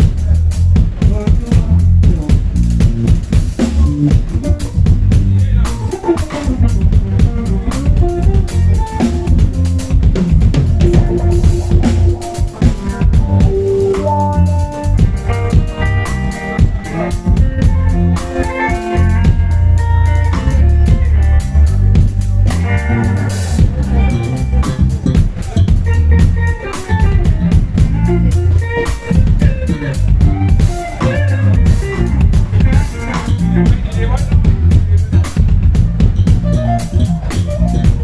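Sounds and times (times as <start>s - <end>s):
drum kit with rimshots: 0.0s - 38.0s
heavy bass line: 0.0s - 38.0s
melodic guitar lines: 5.6s - 34.0s, 36.2s - 38.0s.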